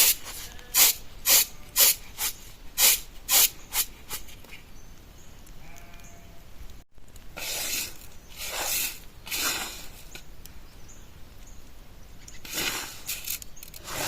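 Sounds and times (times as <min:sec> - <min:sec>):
faint sheep bleat: 0:00.4 - 0:00.9, 0:05.6 - 0:06.5
sharp swishing bursts: 0:07.4 - 0:10.0, 0:12.4 - 0:14.0.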